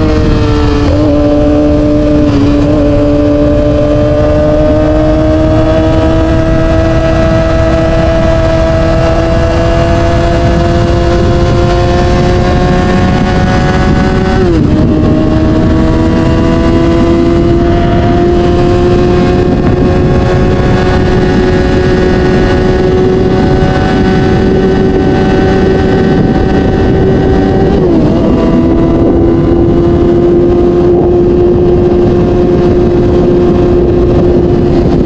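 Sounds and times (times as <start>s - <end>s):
motorcycle engine accelerating: 0.0s - 35.0s
wind noise on microphone: 0.0s - 35.0s.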